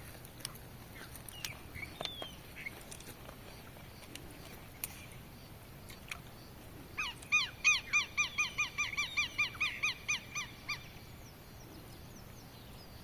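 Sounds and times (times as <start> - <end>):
bird calling harsh notes: 7.0 - 10.9.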